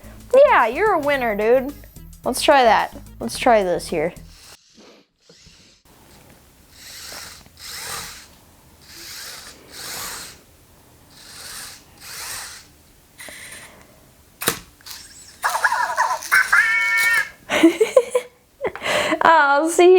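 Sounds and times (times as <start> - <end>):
toy robot motors whirring: 4.2 - 13.8, 14.4 - 17.4
electronic chirps: 15.0 - 17.4.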